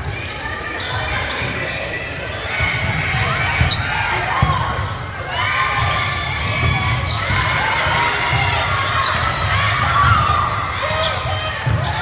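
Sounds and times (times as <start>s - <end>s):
players and spectators calling: 0.0s - 12.0s
basketball bouncing on court: 2.5s - 12.0s.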